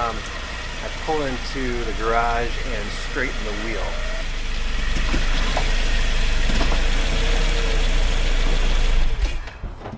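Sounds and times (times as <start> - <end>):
car engine running at low speed: 0.0 - 9.4.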